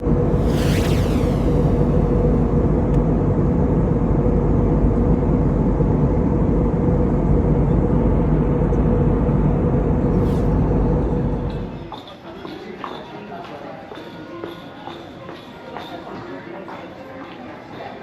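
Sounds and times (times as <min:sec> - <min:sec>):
vehicle engine and road noise: 0:00.0 - 0:12.0.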